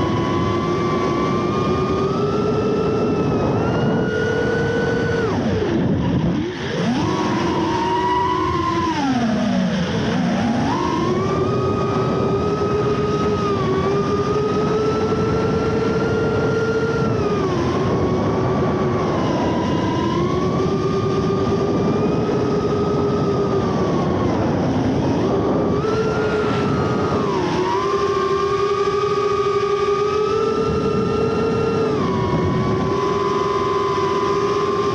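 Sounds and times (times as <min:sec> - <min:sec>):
quadcopter propellers whining: 0:00.0 - 0:34.9.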